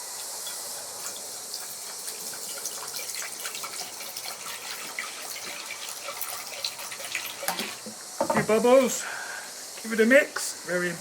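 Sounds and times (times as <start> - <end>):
water running into a basin: 0.0 - 8.8.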